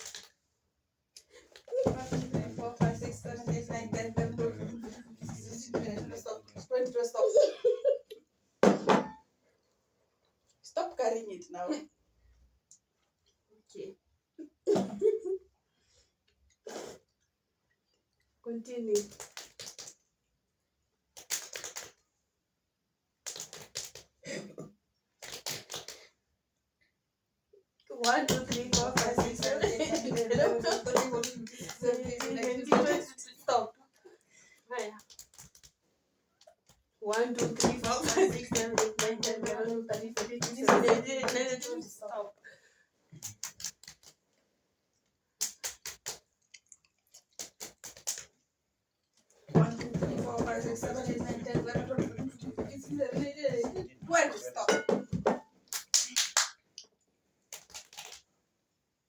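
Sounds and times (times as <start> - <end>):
hand claps: 1.8 - 6.3, 28.0 - 33.1, 37.1 - 41.8, 49.5 - 56.6.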